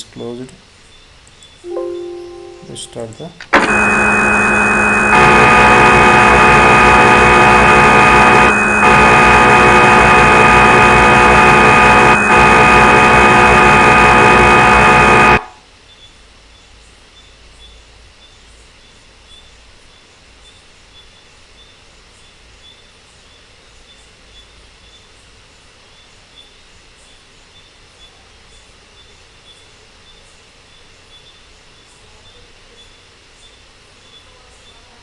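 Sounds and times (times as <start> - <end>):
faint background hiss: 0.0 - 3.6
steady electronic machining hum: 1.8 - 15.6.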